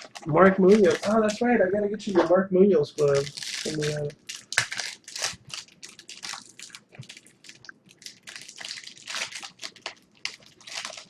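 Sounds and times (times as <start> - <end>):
cards rustling: 0.0 - 1.5, 3.0 - 7.2
foil wrappers crinkling: 0.0 - 1.5, 3.0 - 11.0.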